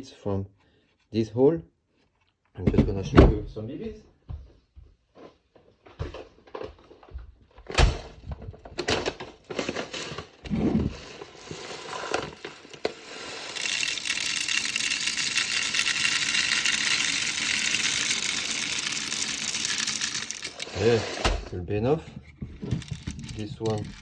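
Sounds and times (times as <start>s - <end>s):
plastic pellets pouring rattle: 9.5s - 21.5s, 22.6s - 24.0s
plastic clicks and knocks: 22.2s - 24.0s.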